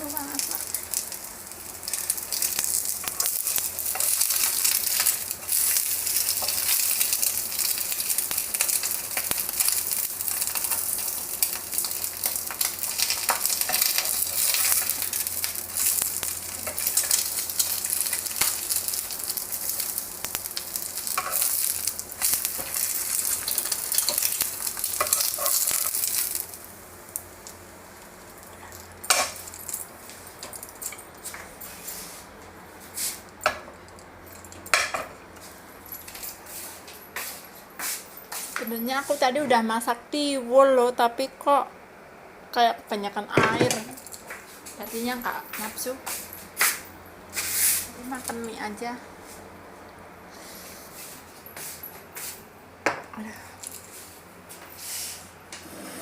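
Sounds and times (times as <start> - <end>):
food sizzling in hot oil: 0.0 - 31.0.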